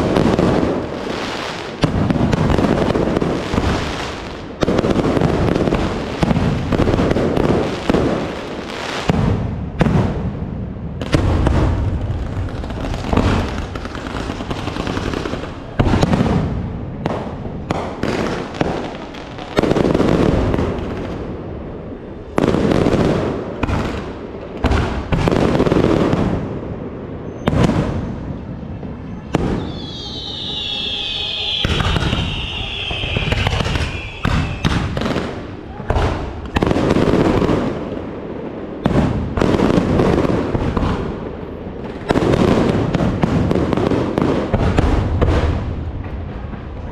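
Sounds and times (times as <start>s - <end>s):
whistling fireworks: 0.0s - 46.9s
firework shells bursting crackling: 11.0s - 21.2s, 28.9s - 45.5s.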